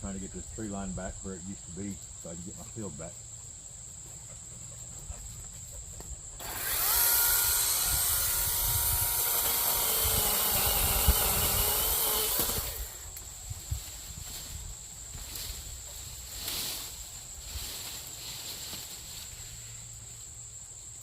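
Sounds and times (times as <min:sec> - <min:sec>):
crickets chirping: 0:00.0 - 0:21.0
power tool whine: 0:06.4 - 0:13.3.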